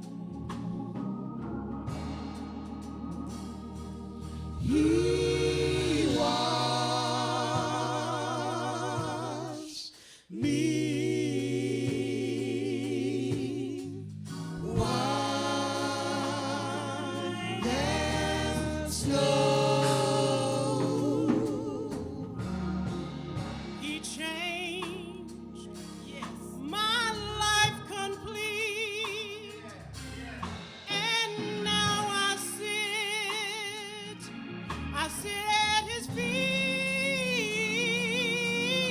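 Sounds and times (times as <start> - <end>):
sustained low accompaniment: 0.0 - 9.6, 10.4 - 28.7
gospel singers singing: 0.0 - 38.9.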